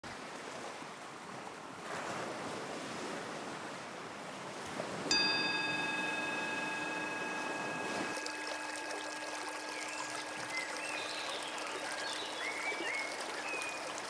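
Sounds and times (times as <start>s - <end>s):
stream water trickling: 4.6s - 14.0s
bell-like ringing tone: 5.1s - 12.3s.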